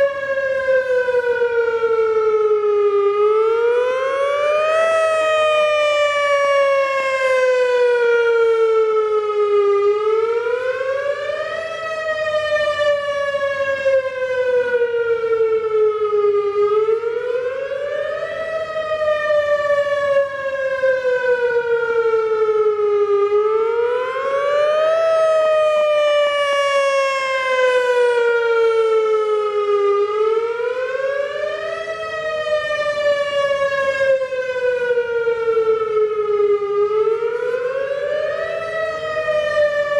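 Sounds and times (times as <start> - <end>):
tornado siren wailing: 0.0 - 39.9.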